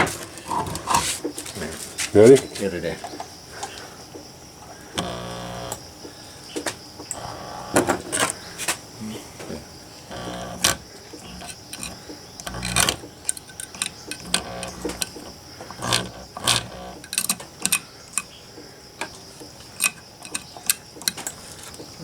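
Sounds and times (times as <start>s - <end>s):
pump clicking and ticking: 4.8s - 6.2s, 7.0s - 8.4s, 10.0s - 22.0s.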